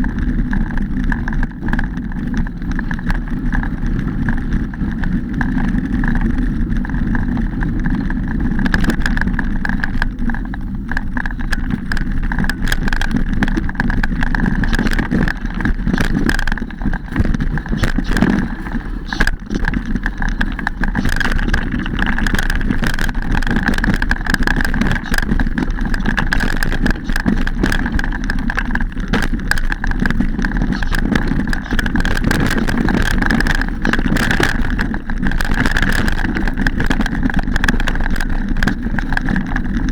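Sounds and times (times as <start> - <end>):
bike rattling and knocking: 0.0 - 39.9
wind rumble: 0.0 - 39.9
steady high hum: 7.1 - 39.8.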